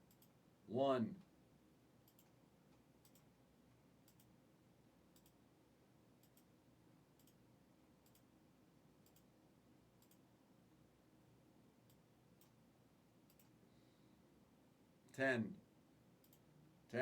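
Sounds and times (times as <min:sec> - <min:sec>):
faint double ticks: 0:00.0 - 0:00.4, 0:02.1 - 0:02.4, 0:04.1 - 0:04.3, 0:05.1 - 0:05.4, 0:08.0 - 0:08.3, 0:09.0 - 0:09.3, 0:10.0 - 0:10.2, 0:13.3 - 0:13.6, 0:16.2 - 0:16.4.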